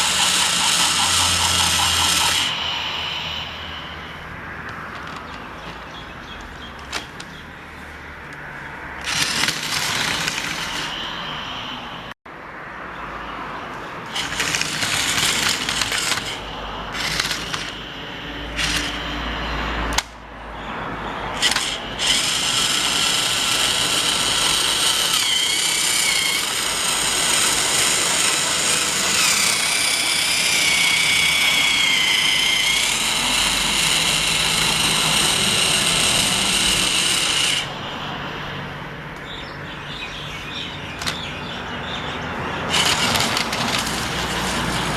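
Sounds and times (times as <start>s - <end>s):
toy train motor whining: 0.0s - 5.8s, 9.0s - 12.0s, 14.1s - 20.0s, 21.3s - 38.0s, 41.0s - 41.4s, 42.7s - 44.9s.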